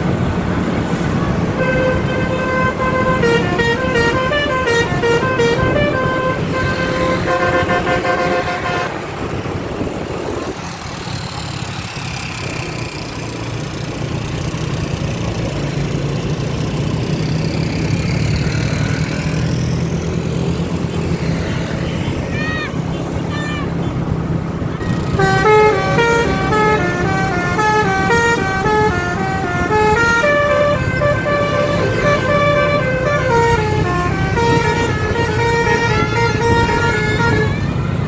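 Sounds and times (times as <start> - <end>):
bus engine rumble: 0.0 - 38.0
multi-tone bus horn tune: 1.2 - 9.4, 24.7 - 38.0.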